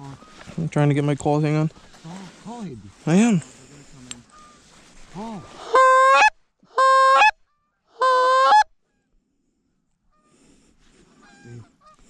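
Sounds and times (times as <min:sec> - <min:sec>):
goose call honks: 0:05.2 - 0:07.4, 0:08.0 - 0:08.7.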